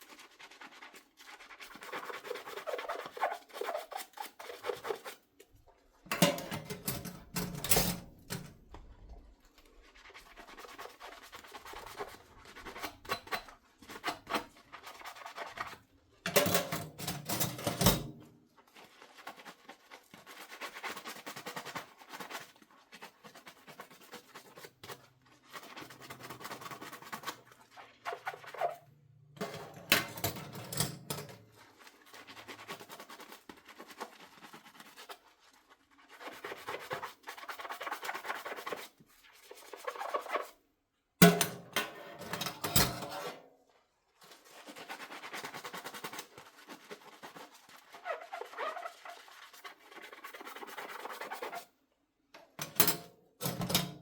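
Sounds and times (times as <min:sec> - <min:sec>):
sponge scrubbing dishes: 0:00.0 - 0:40.5, 0:41.2 - 0:51.7
dishes clicking and scraping: 0:06.1 - 0:08.6, 0:16.3 - 0:18.3, 0:29.4 - 0:31.4, 0:41.2 - 0:43.4, 0:52.6 - 0:54.0.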